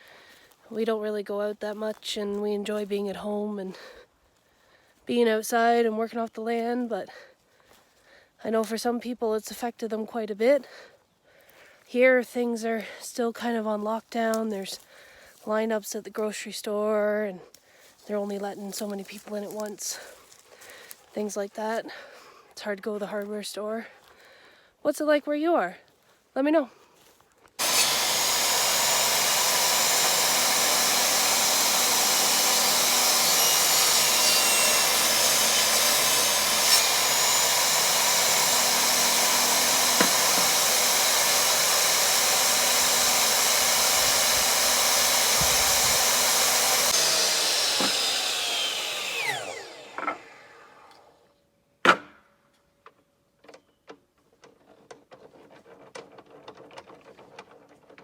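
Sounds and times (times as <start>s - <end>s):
power tool motor running: 27.6s - 51.2s.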